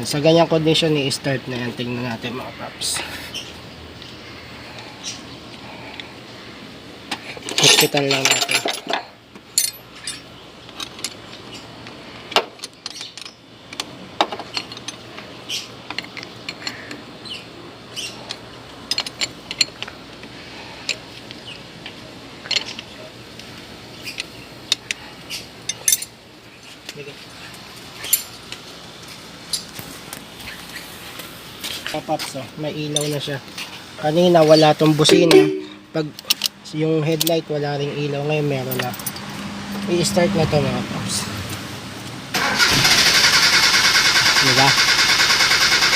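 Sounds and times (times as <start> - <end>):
hand tools clinking on metal: 7.4 - 11.2.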